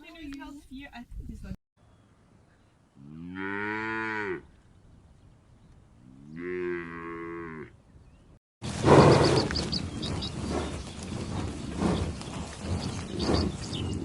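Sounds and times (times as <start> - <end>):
cow mooing: 3.0 - 4.5, 6.0 - 7.7.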